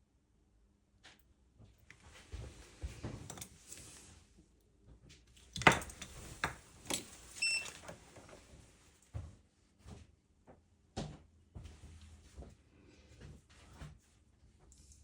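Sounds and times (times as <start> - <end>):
tools clicking and knocking: 5.5 - 7.1.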